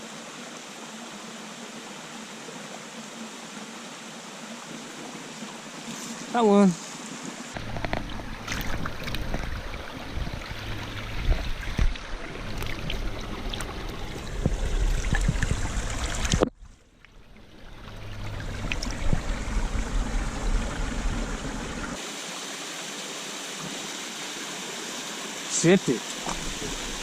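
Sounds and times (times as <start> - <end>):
creek rushing over rocks: 0.0 - 16.5, 17.2 - 27.0.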